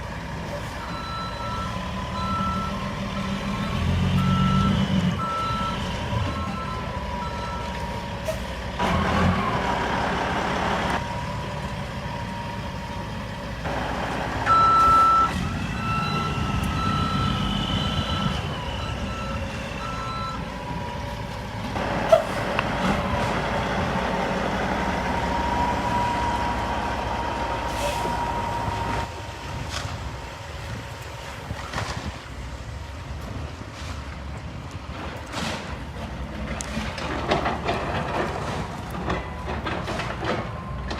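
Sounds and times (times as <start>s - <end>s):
diesel engine under load: 0.0s - 40.9s
reversing alarm beeping: 0.8s - 8.1s, 13.8s - 21.2s, 25.0s - 29.1s.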